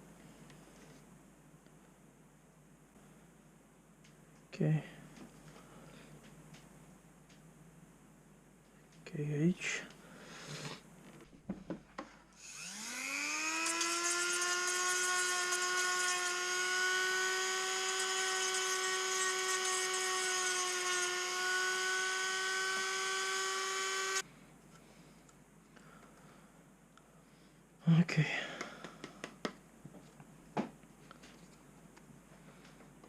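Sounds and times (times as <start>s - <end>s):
small electric motor whine: 12.4s - 24.2s.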